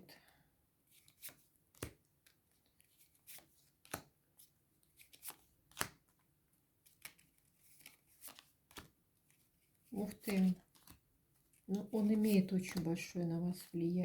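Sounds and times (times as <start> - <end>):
cards flicking and tapping: 0.9 - 6.2, 6.8 - 9.4, 10.0 - 13.1.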